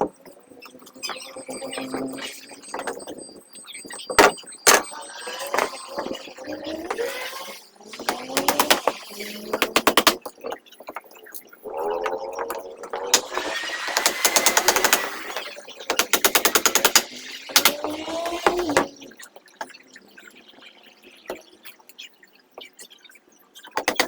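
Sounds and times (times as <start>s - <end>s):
power tool rattling clicks: 8.1s - 8.9s, 9.6s - 10.2s, 13.1s - 18.7s
power tool whine: 13.1s - 15.6s.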